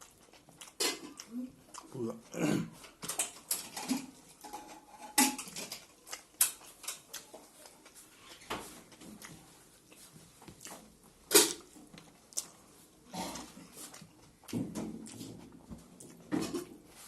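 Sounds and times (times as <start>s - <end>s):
wet chewing and mouth smacks: 0.0s - 2.3s, 5.6s - 8.0s, 9.2s - 12.8s, 13.4s - 15.4s.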